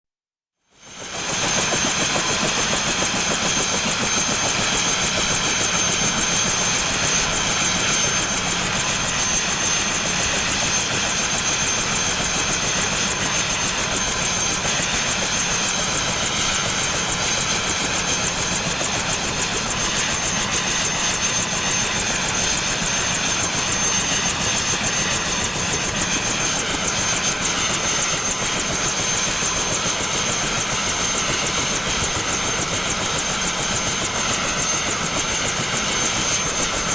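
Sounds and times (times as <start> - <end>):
helicopter turbine whine: 0.7 - 36.9
helicopter rotor beat: 0.8 - 36.9.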